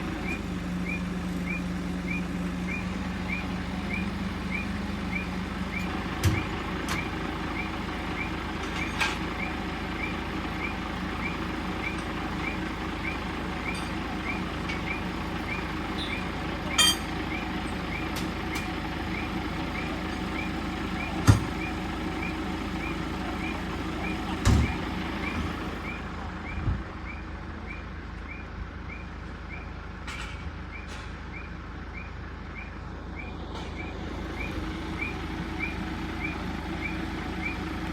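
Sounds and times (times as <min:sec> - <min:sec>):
electronic alarm beeping: 0:19.1 - 0:29.7.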